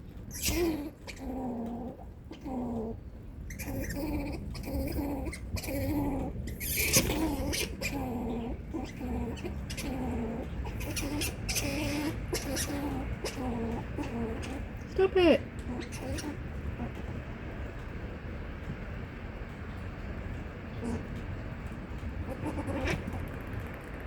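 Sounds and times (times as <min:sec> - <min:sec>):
squirrel warning call: 0:00.3 - 0:01.4, 0:03.5 - 0:14.9, 0:15.5 - 0:17.2, 0:22.2 - 0:23.6.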